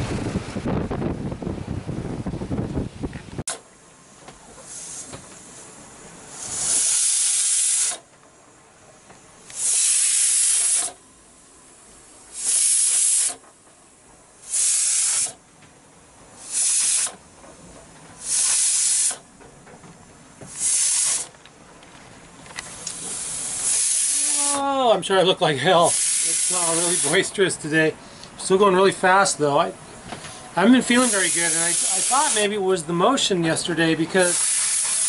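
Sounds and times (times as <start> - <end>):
water rushing past a hull: 0.0 - 3.4.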